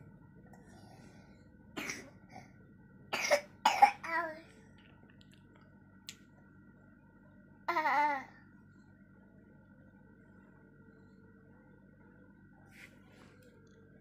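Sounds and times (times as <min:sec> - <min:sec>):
child coughing: 0:01.8 - 0:02.2, 0:03.1 - 0:04.4.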